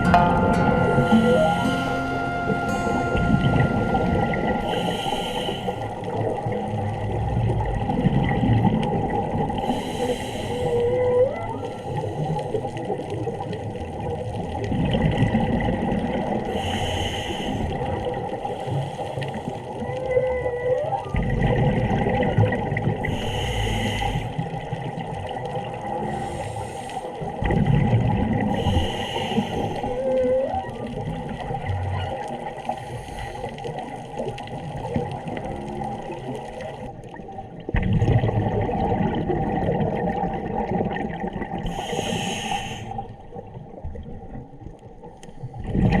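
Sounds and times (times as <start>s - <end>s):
humpback whale song: 0.0s - 7.2s, 9.6s - 12.3s, 18.5s - 21.4s, 28.5s - 33.3s, 41.6s - 43.3s
low rumbling sea background: 0.0s - 46.0s.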